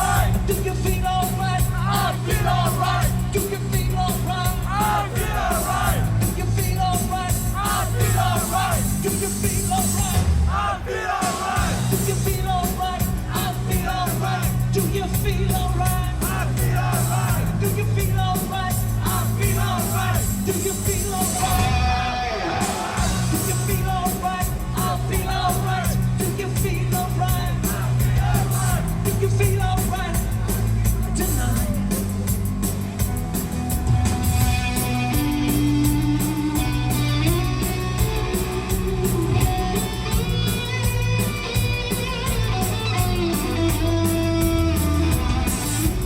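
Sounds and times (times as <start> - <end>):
live hard rock band: 0.0 - 46.0.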